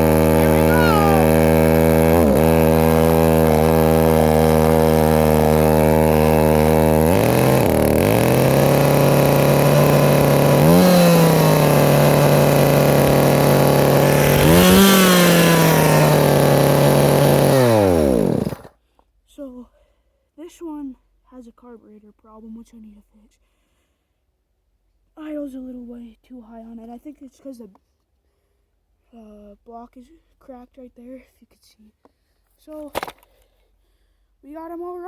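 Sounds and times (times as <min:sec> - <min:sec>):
chainsaw engine running: 0:00.0 - 0:18.7.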